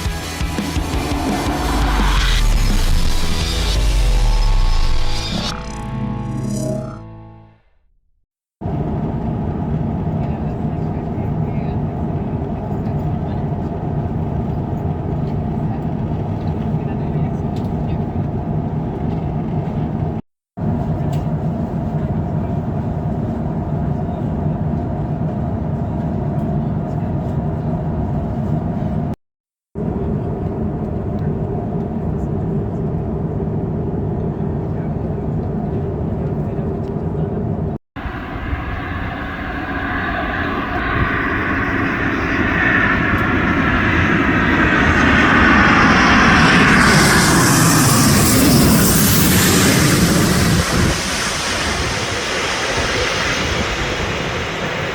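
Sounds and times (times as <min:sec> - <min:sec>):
jet engines rumbling: 0:00.0 - 0:05.7, 0:08.6 - 0:29.1, 0:29.8 - 0:54.9
jet engines roaring: 0:00.0 - 0:05.8, 0:38.0 - 0:54.9.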